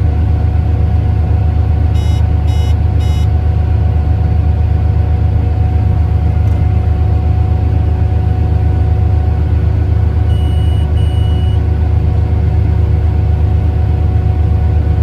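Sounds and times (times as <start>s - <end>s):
heavy machinery engine droning: 0.0s - 15.0s
short electronic beeps: 2.0s - 3.3s, 10.3s - 11.6s.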